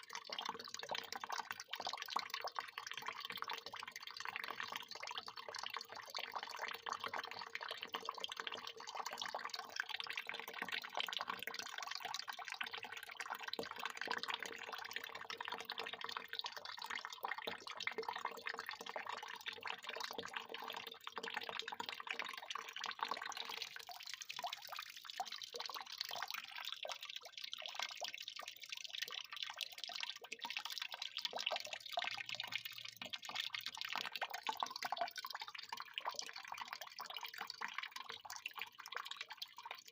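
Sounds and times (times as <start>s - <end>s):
water pouring and splashing: 13.5s - 39.9s.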